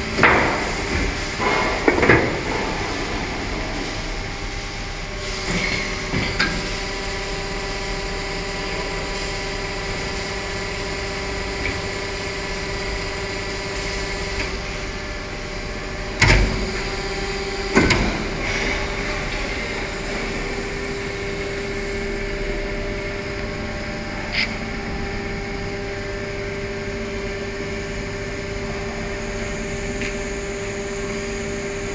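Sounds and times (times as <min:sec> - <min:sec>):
machine humming: 0:00.0 - 0:31.9
loud machine clunks: 0:00.1 - 0:04.4, 0:17.7 - 0:20.6.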